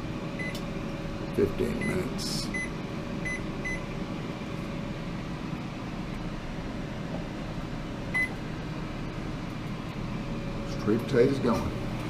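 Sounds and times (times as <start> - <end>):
kitchen appliances humming: 0.0 - 12.0
microwave keypad beep: 0.4 - 0.6, 1.7 - 3.9, 8.1 - 8.4.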